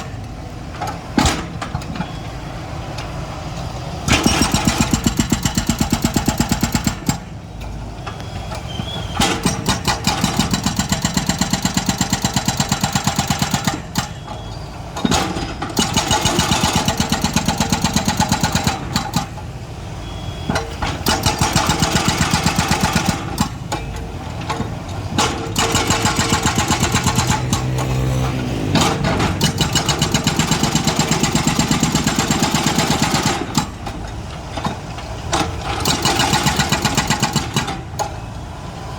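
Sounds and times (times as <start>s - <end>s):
excavator rapid pounding: 4.0s - 7.3s, 9.2s - 14.2s, 15.0s - 19.4s, 20.8s - 38.0s
diesel engine running: 11.2s - 38.9s.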